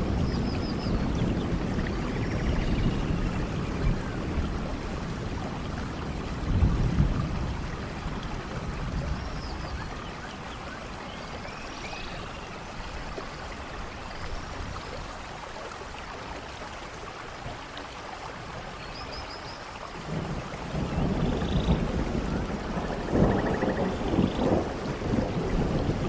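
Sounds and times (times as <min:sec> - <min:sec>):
low thunder rumble: 0:00.0 - 0:10.0, 0:20.1 - 0:26.0
steady rain: 0:00.0 - 0:26.0.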